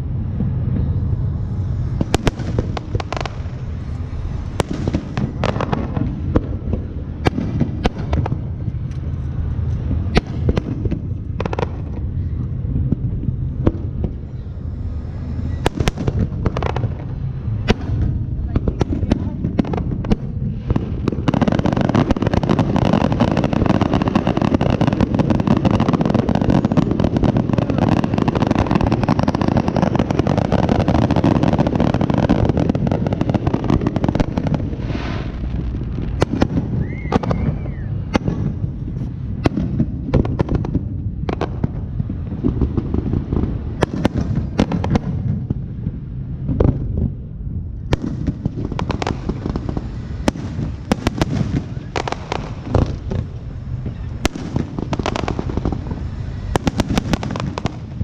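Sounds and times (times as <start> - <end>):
firework whistle: 0.0 - 8.2, 11.4 - 18.2, 19.6 - 39.5, 48.0 - 58.0
fireworks crackling and banging: 0.0 - 58.0.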